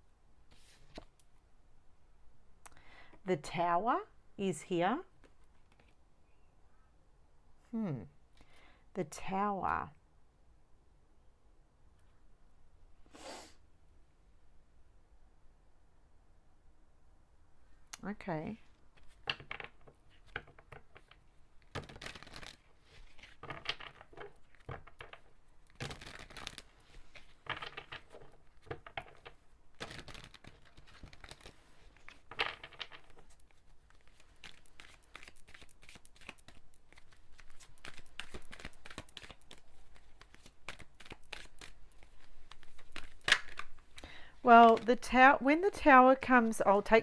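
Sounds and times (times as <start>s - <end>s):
cards being shuffled: 0.5s - 1.3s, 5.2s - 6.0s, 18.9s - 44.9s.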